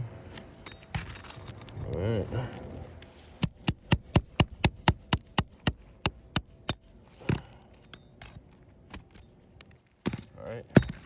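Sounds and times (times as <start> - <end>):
hammer striking metal nail puller: 3.4 - 7.4.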